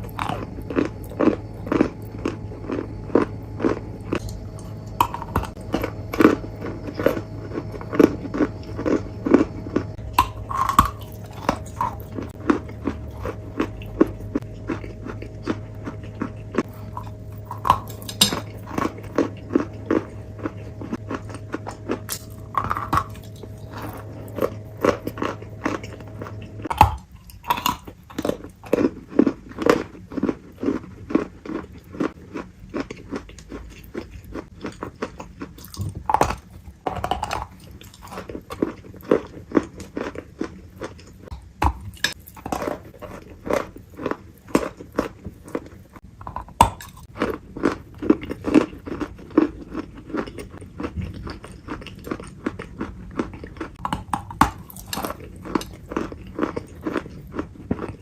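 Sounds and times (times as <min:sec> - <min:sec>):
chewing crunchy food: 0:00.0 - 0:58.0.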